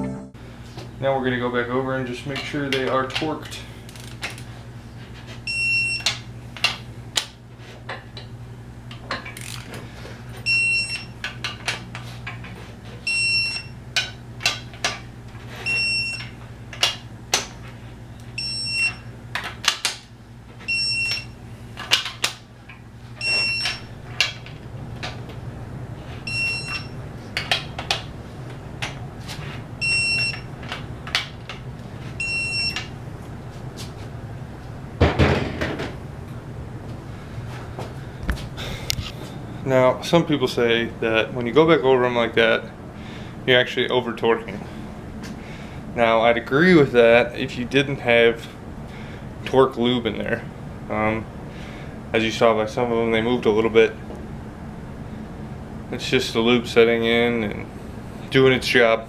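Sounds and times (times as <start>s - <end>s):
short high beeps: 0.0s - 0.4s
wrench ratchet clicking: 9.4s - 9.7s.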